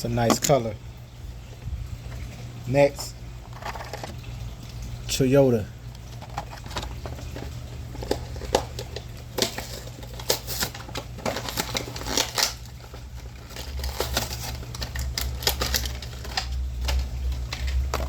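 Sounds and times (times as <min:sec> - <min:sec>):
steady low hum: 0:00.0 - 0:18.0
box packaging crinkling: 0:06.0 - 0:18.0.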